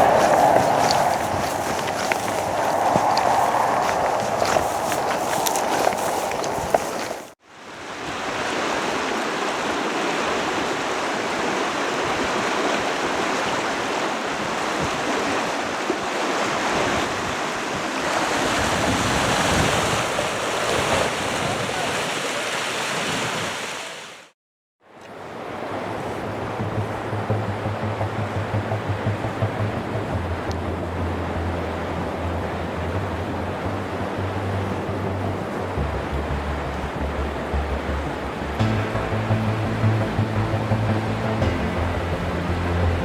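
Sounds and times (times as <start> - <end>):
river water rushing: 0.0 - 24.1.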